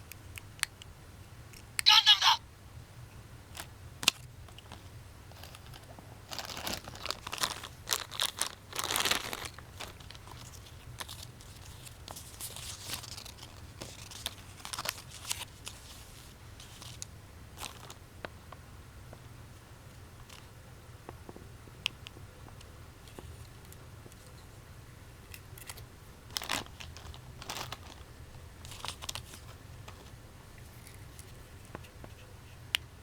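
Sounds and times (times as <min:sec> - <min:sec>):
plastic packaging crinkling: 0:05.3 - 0:18.0, 0:26.3 - 0:30.1.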